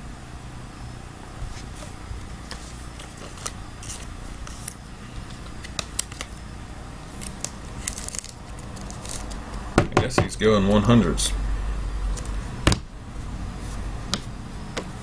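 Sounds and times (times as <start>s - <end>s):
trading cards clicking and rustling: 1.5s - 6.5s, 7.1s - 10.4s.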